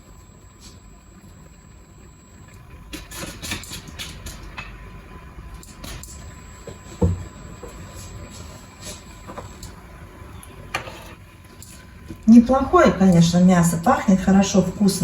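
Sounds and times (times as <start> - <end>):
utensil scraping a frying pan: 10.7 - 11.2.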